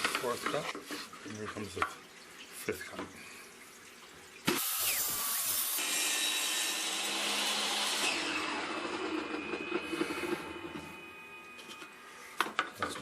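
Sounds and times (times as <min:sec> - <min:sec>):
table saw cutting wood: 0:04.5 - 0:12.2.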